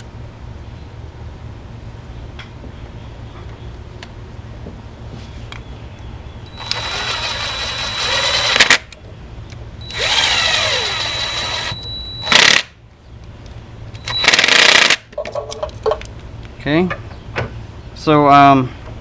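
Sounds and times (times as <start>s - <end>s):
power driver whining: 6.5s - 9.0s, 9.8s - 12.7s, 13.9s - 15.0s.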